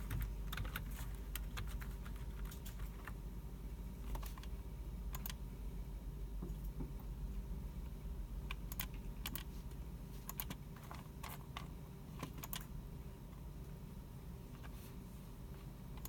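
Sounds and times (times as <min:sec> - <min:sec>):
low room hum: 0:00.0 - 0:16.0
keyboard and mouse clicks: 0:04.1 - 0:05.4, 0:08.5 - 0:09.5, 0:10.3 - 0:12.7.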